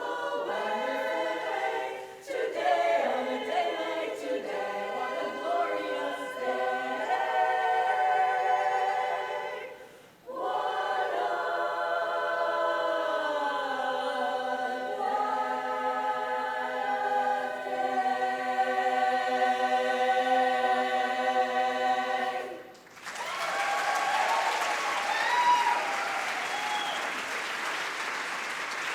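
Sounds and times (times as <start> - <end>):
a cappella chorus singing: 0.0 - 22.8
applause: 22.7 - 28.9.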